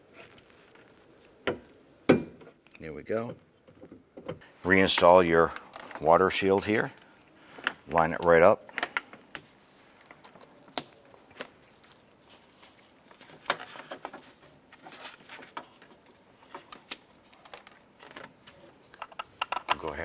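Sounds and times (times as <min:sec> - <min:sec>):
plastic sheet rustling and crinkling: 0:00.0 - 0:01.4, 0:04.5 - 0:08.4, 0:09.0 - 0:19.0.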